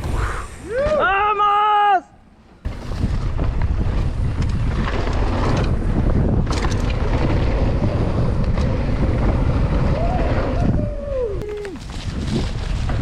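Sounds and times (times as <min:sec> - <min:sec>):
bike tyres rumbling on dirt: 0:02.4 - 0:13.0
bike clicks and clatters: 0:02.6 - 0:13.0
wind buffeting microphone: 0:02.6 - 0:13.0.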